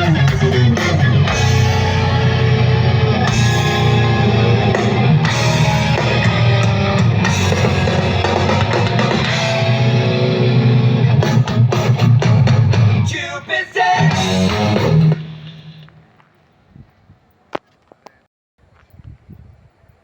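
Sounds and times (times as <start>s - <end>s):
live rock band playing: 0.0s - 13.2s, 14.0s - 15.8s.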